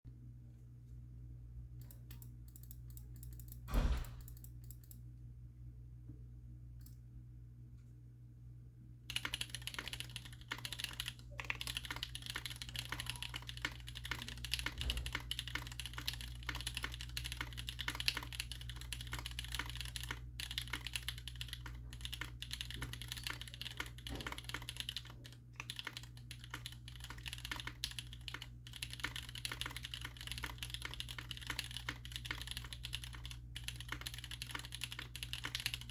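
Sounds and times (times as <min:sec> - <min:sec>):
low steady hum: 0:00.1 - 0:35.9
single thump: 0:03.7 - 0:04.2
typing on mechanical keyboard: 0:09.1 - 0:35.9.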